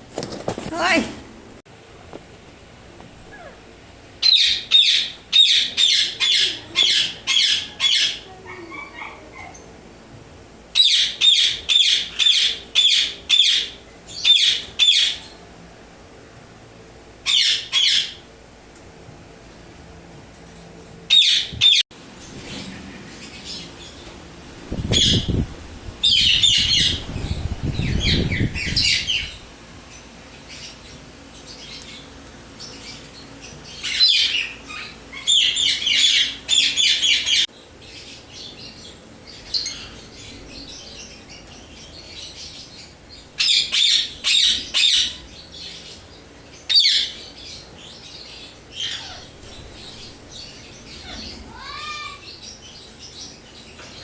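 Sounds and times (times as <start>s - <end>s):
parakeets squawking: 3.3s - 9.8s, 17.3s - 18.3s, 21.1s - 21.8s, 24.8s - 25.4s, 26.0s - 29.4s, 32.8s - 37.4s, 43.4s - 46.1s, 46.7s - 53.4s.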